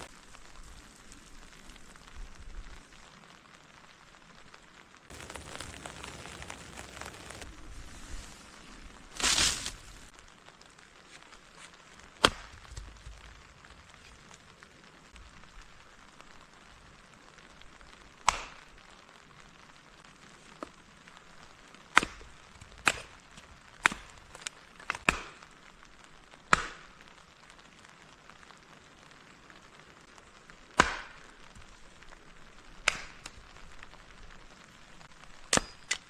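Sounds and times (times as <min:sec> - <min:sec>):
faint steady hiss: 0:00.0 - 0:24.8
axe chopping wood: 0:12.2 - 0:12.7, 0:21.9 - 0:23.1, 0:24.8 - 0:25.4.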